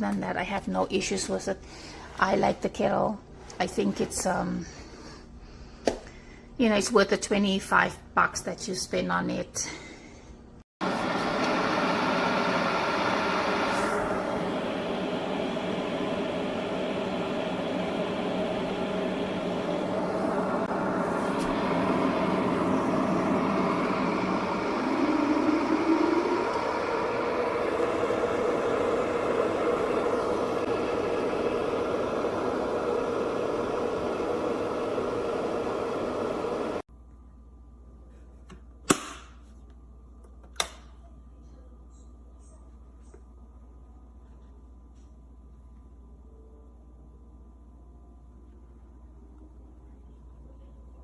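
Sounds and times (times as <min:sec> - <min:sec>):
electric kettle heating water: 0:10.8 - 0:36.8.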